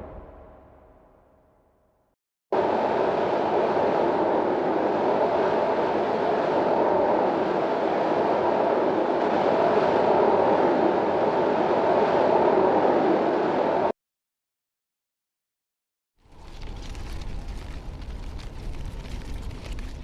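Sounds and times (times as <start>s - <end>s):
steady rush of wind: 2.6s - 13.9s.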